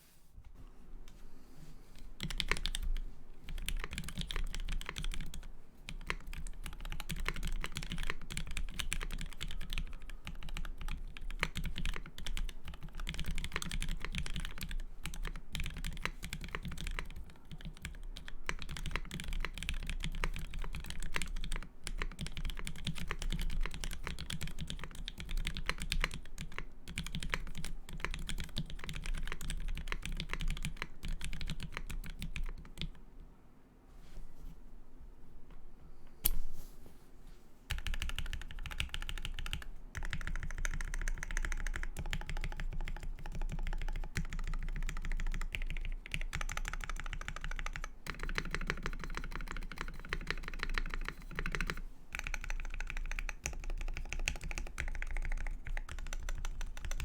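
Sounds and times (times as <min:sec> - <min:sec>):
fast typing on mechanical keyboard: 0:02.2 - 0:33.0, 0:37.7 - 0:57.0.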